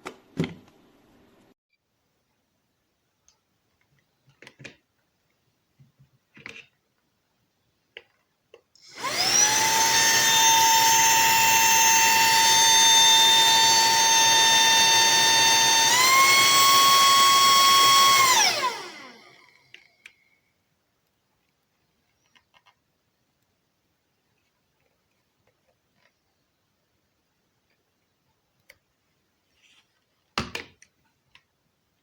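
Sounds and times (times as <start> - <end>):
handheld vacuum cleaner motor whine: 8.8 - 20.2
small clicks: 21.0 - 23.6.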